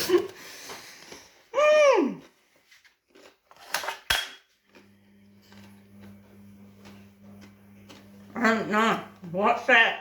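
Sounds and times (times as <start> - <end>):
woman exclaiming oooh: 1.5 - 2.2.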